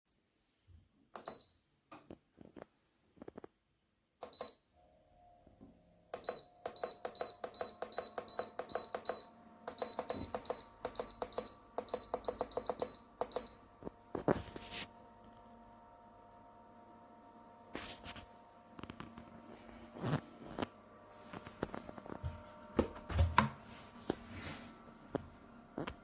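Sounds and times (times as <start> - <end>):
button clicks with high beeps: 6.2 - 13.6.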